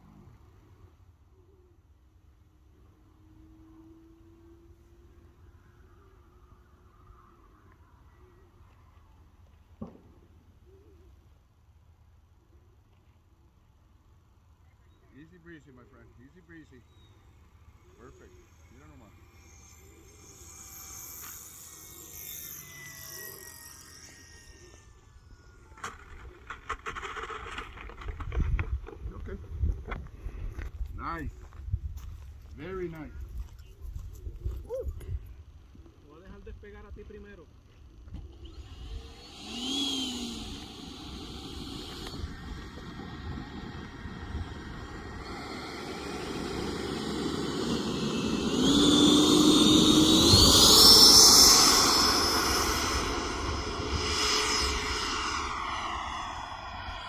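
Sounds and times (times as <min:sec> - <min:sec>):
electric motor whining: 0:17.4 - 0:27.6, 0:38.1 - 0:57.0.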